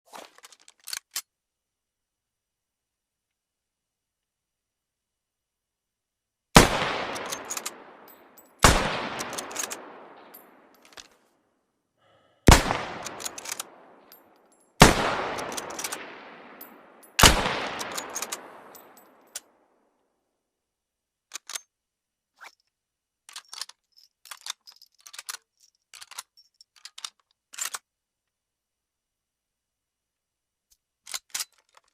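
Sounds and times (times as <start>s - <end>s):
rifle shots with echo: 6.6s - 10.7s, 12.5s - 14.2s, 14.8s - 19.2s.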